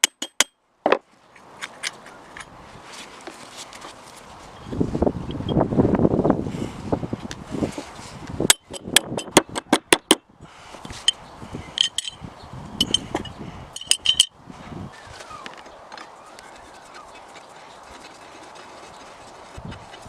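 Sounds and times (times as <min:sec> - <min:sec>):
sharp clicks of metal parts: 0:11.8 - 0:12.2, 0:12.8 - 0:14.3
ringing metallic clinks: 0:12.8 - 0:14.3.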